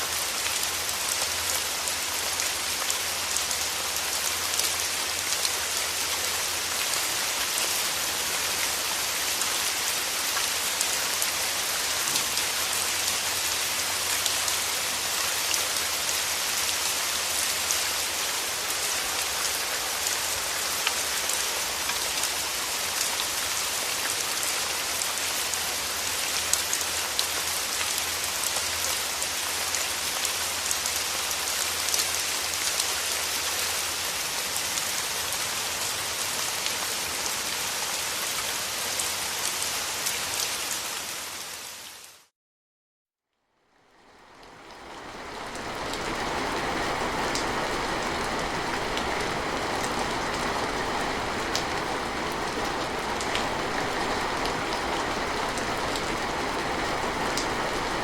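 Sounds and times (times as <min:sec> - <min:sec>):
steady rain falling: 0:00.0 - 0:42.3, 0:43.8 - 0:58.0.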